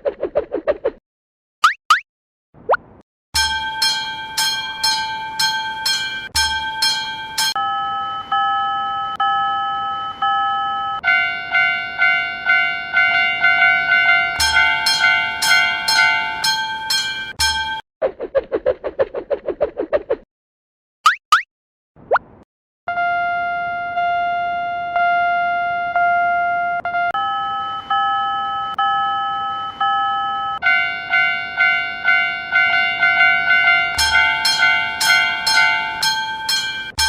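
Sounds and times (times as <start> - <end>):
electronic warning dings: 3.4 - 17.8, 27.2 - 37.0.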